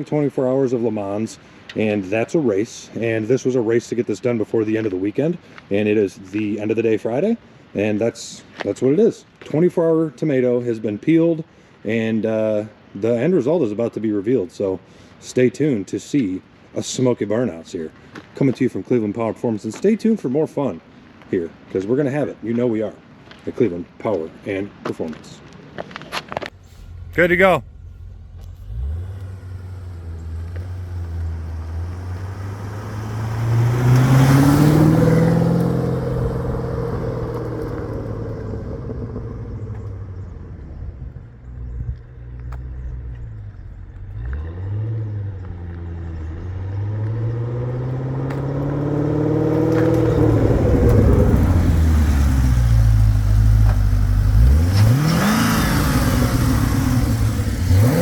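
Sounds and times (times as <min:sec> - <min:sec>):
car engine revving: 0:26.5 - 0:41.7, 0:42.3 - 0:58.0.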